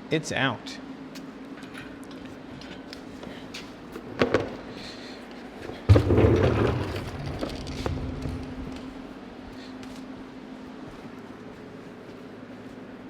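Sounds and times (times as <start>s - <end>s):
heavy thump with rattling: 5.6s - 9.1s.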